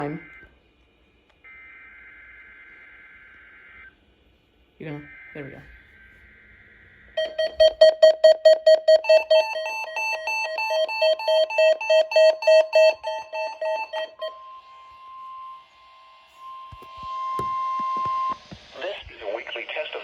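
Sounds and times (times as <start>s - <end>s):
steady alarm tone: 4.9s - 18.8s
rapid electronic alarm beeping: 5.0s - 18.8s.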